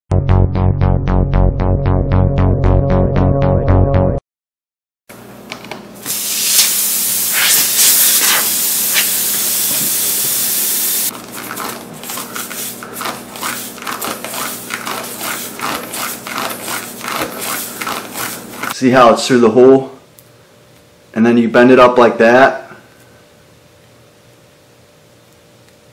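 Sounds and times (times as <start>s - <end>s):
air hissing out of tire: 6.1s - 11.1s.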